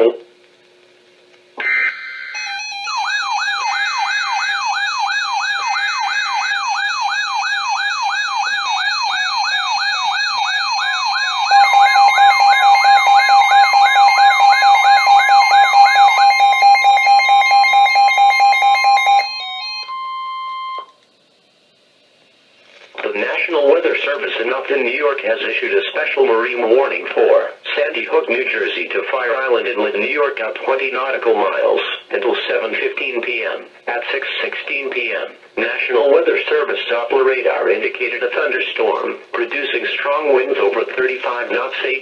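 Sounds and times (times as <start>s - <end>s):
electronic alarm siren sweeping: 1.6s - 21.0s.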